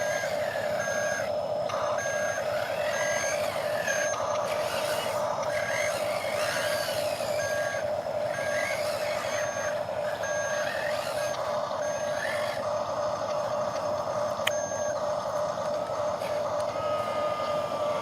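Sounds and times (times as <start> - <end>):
reversing beeps: 0.0 - 12.6, 14.4 - 15.0, 15.8 - 18.0
steady whine: 0.0 - 18.0.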